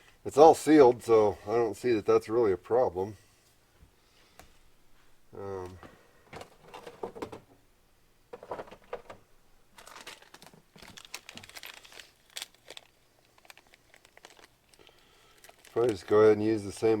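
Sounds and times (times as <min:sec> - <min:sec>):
rustling: 0:04.3 - 0:07.6, 0:08.3 - 0:17.0.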